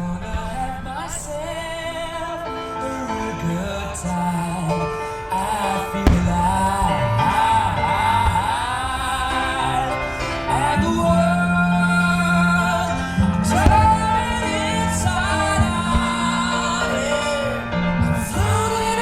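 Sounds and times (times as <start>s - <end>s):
person singing: 0.0s - 19.0s
sustained bass notes: 3.0s - 19.0s
sharp bangs: 4.4s - 19.0s.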